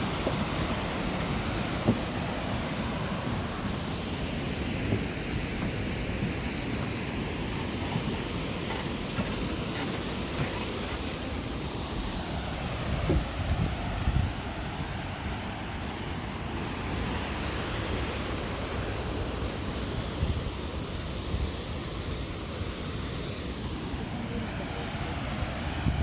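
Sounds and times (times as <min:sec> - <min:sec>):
waterfall roaring: 0:00.0 - 0:11.2
wind gusts on microphone: 0:00.0 - 0:26.0.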